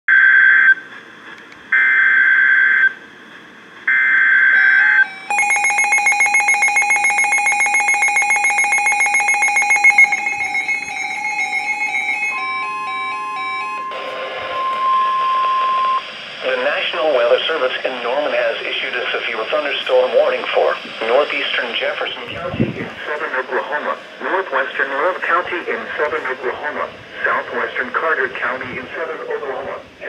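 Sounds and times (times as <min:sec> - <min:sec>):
screeching digital data tones: 0:04.5 - 0:16.0
pulsing electronic alert beep: 0:04.6 - 0:14.0
steady alert tone: 0:04.6 - 0:14.0.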